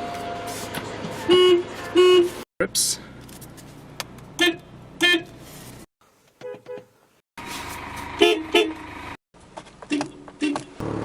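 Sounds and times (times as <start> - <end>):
car horns honking: 1.2 - 2.4, 4.4 - 5.4, 6.4 - 6.9, 8.1 - 9.0, 9.9 - 10.8.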